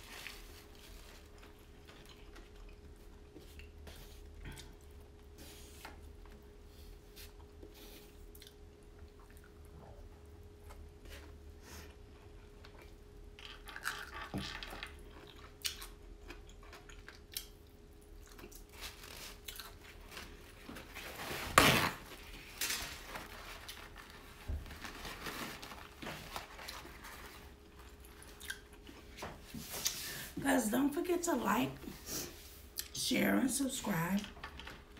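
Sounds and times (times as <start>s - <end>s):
chewing and biting: 28.0s - 29.0s.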